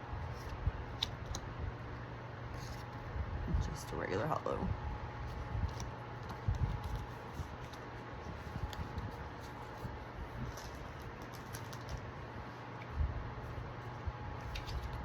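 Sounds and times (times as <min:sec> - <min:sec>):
low room hum: 0:00.0 - 0:15.0
trading cards flicking and tapping: 0:05.6 - 0:12.1, 0:14.4 - 0:15.0.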